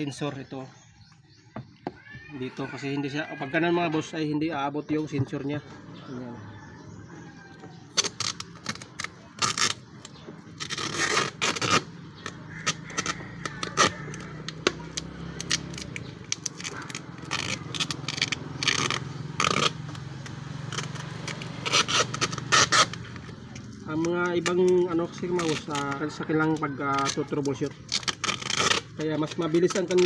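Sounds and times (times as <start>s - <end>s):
scraping of plastic parts: 7.7s - 30.0s
crackling of plastic: 7.8s - 30.0s.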